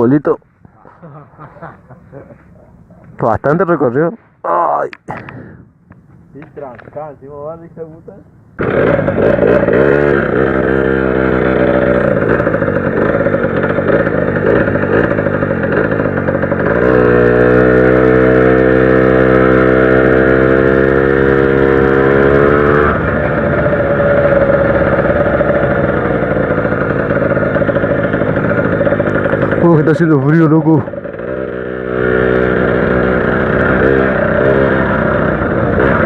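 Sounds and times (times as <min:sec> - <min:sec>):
two-stroke moped engine running: 0:08.6 - 0:36.0.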